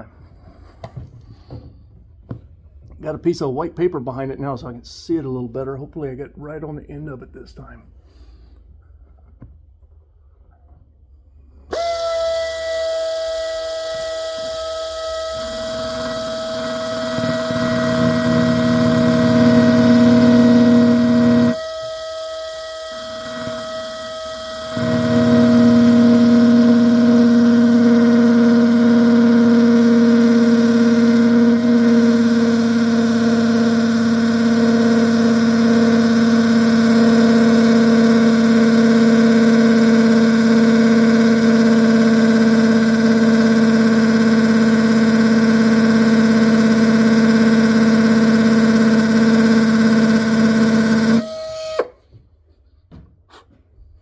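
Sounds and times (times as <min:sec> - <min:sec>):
power drill grinding into glass: 0:11.7 - 0:52.0.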